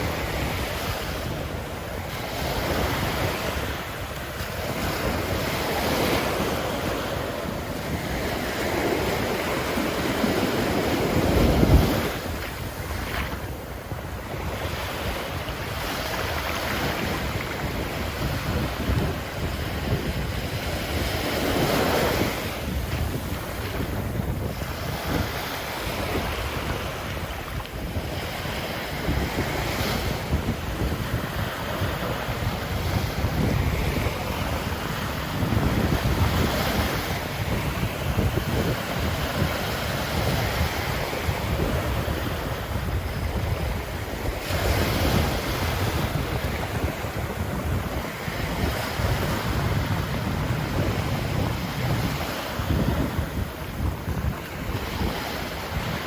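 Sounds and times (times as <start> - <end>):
ocean surf breaking on beach: 0.0 - 56.0
wind rumble on microphone: 0.0 - 56.0.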